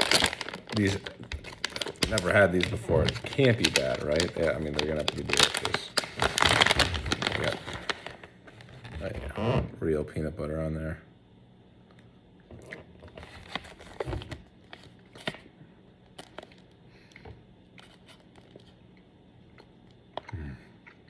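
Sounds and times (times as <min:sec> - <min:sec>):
snack pouch crinkling and tearing: 0:00.0 - 0:09.1.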